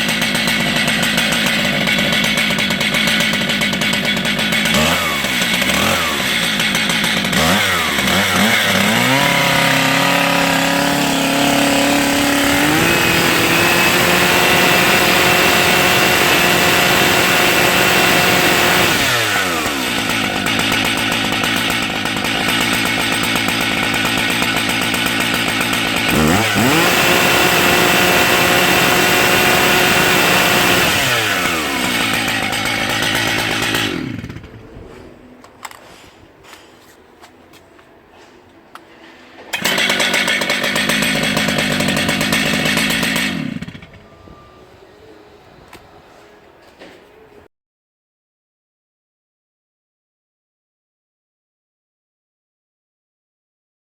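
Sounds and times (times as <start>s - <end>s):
chainsaw engine revving: 0.0s - 34.6s, 39.5s - 44.1s.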